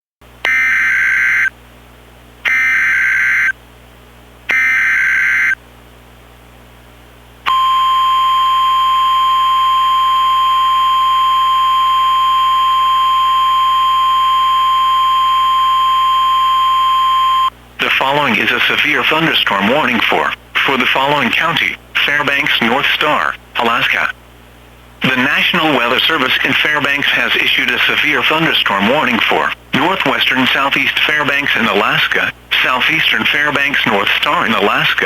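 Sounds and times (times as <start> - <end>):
data tone bursts: 2.5 - 3.5, 4.5 - 5.6, 7.5 - 18.0
steady attention tone: 2.5 - 3.6, 4.5 - 5.6, 7.5 - 24.1.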